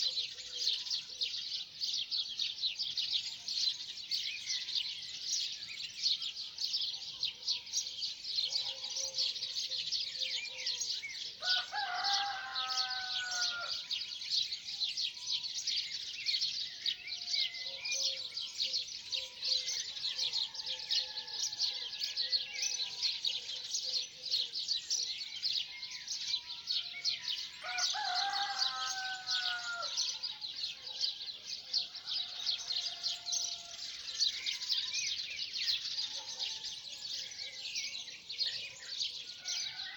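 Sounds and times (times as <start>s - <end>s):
songbirds chirping: 0.0s - 39.9s
rooster crowing: 11.4s - 13.8s, 26.9s - 30.1s, 32.1s - 33.9s.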